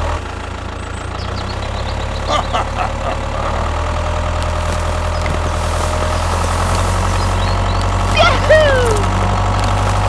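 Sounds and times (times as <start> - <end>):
engine humming with clatter: 0.0 - 10.0.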